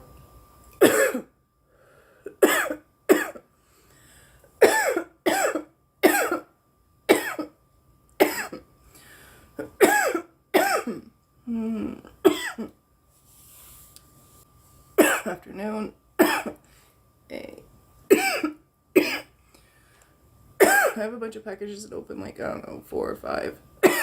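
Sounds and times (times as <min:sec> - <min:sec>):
woman coughing: 0:00.8 - 0:01.3, 0:02.4 - 0:03.5, 0:04.6 - 0:06.5, 0:07.1 - 0:07.6, 0:08.2 - 0:08.7, 0:09.6 - 0:11.1, 0:12.2 - 0:12.8, 0:15.0 - 0:15.4, 0:16.2 - 0:16.6, 0:18.1 - 0:19.3, 0:20.6 - 0:21.1.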